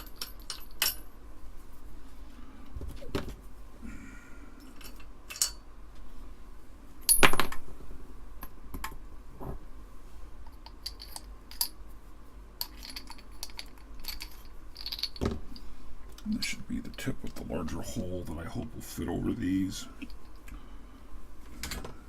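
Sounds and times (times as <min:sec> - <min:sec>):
small metal parts clinking: 0:00.0 - 0:01.1, 0:04.6 - 0:05.7, 0:10.4 - 0:11.8, 0:12.6 - 0:15.7.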